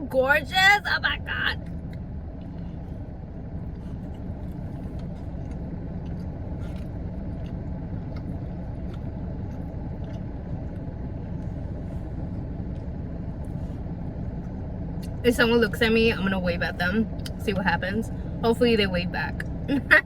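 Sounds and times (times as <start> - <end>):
car engine idling: 0.0 - 20.0.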